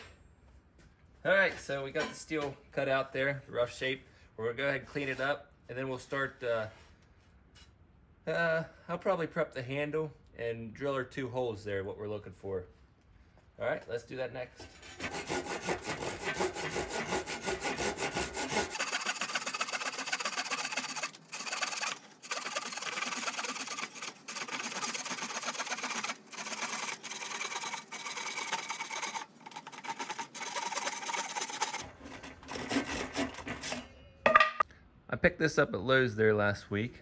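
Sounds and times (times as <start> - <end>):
hand saw cutting wood: 14.6 - 33.9.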